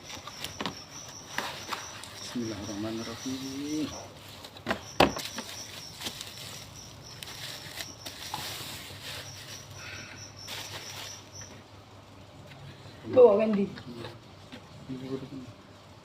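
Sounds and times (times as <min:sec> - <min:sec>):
packaging rustling and scraping: 0:00.0 - 0:09.8, 0:10.4 - 0:11.4.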